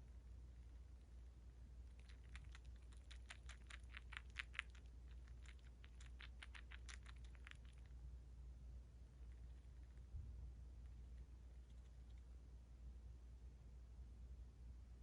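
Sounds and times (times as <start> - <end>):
chipmunk chewing crunchily: 0.0 - 8.0, 9.1 - 10.1, 10.7 - 12.4.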